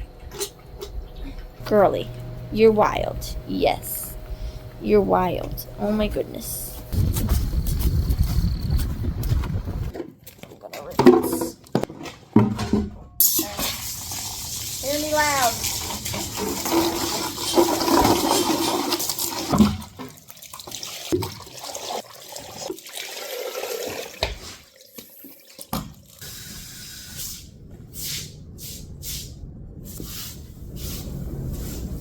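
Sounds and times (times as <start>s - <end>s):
liquid splashing and running: 13.4s - 26.2s
short hissing bursts: 26.2s - 31.9s.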